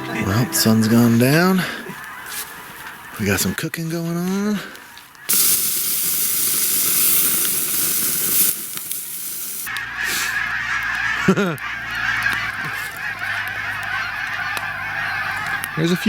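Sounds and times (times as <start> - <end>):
flock of geese honking: 0.0 - 5.6, 9.6 - 16.0
food sizzling in a pan: 5.3 - 9.7
nearer falling goose call: 9.7 - 16.0.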